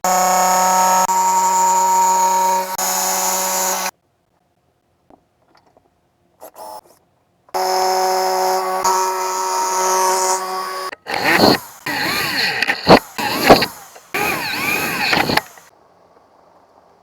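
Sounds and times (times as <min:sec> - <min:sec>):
power tool motor running: 0:00.0 - 0:03.9, 0:07.6 - 0:15.7
faint clicks: 0:10.9 - 0:15.7.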